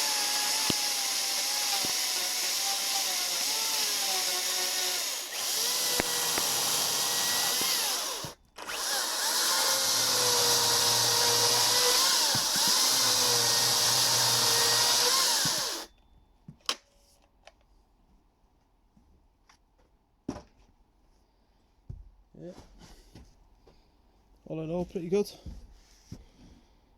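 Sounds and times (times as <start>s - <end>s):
electric chainsaw cutting wood: 0.0s - 15.9s.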